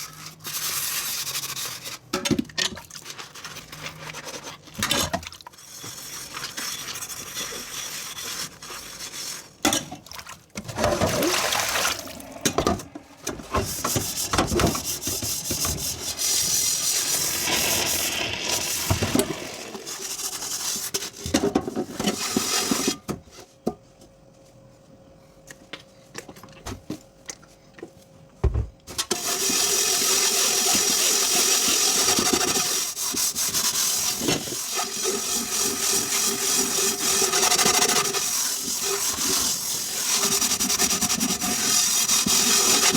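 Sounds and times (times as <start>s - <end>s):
dishes being scrubbed: 0.0s - 23.0s, 29.1s - 42.9s
running tap water: 10.6s - 20.3s.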